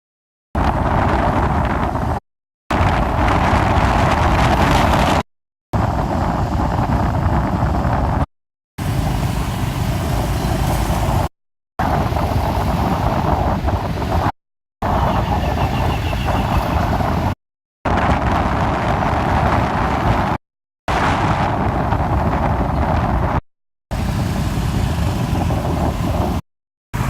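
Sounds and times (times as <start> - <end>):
wind rushing: 0.6 - 5.2, 5.8 - 26.4
traffic noise: 8.8 - 13.8, 14.8 - 17.3, 23.9 - 26.4.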